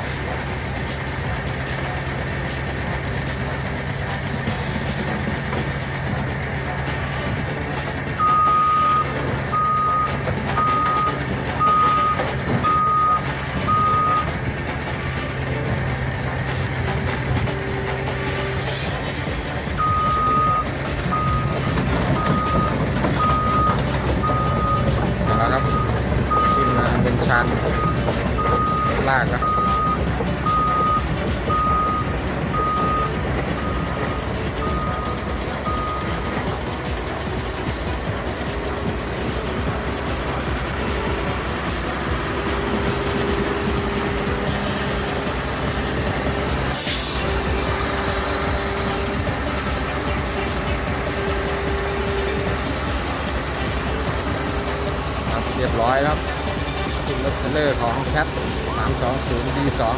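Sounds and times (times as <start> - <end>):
diesel engine running: 0.0 - 59.9
backup alarm beeping: 8.2 - 14.3, 19.8 - 36.5.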